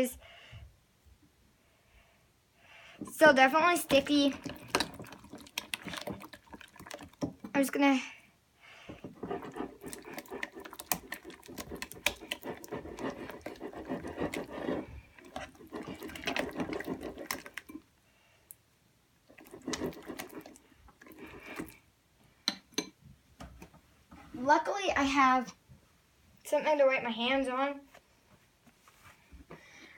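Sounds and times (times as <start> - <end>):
slime squelching: 3.1 - 7.6, 9.0 - 17.8, 19.2 - 21.8.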